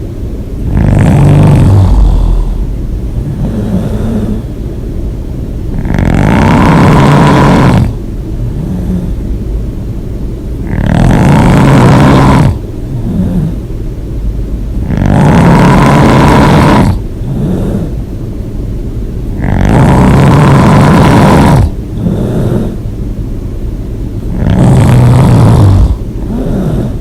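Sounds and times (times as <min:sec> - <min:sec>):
quiet breaths: 0:00.0 - 0:27.0
person snoring: 0:00.6 - 0:04.5, 0:05.7 - 0:09.2, 0:10.6 - 0:13.6, 0:14.8 - 0:18.0, 0:19.4 - 0:22.8, 0:24.3 - 0:27.0.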